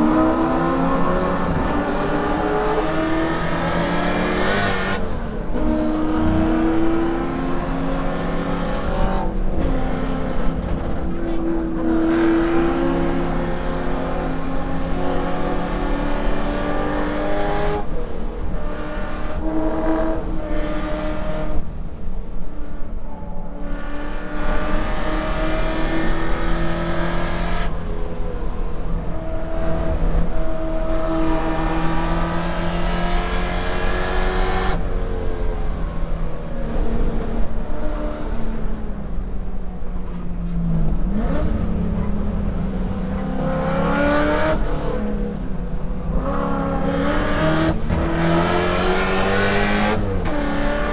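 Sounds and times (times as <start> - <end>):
race car engine revving: 40.9 - 50.9.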